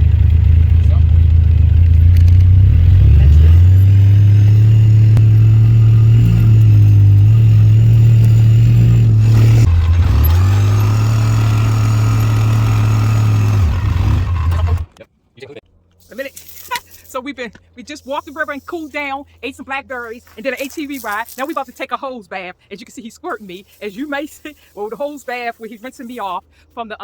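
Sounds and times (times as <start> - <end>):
atv engine running: 0.0 - 15.0.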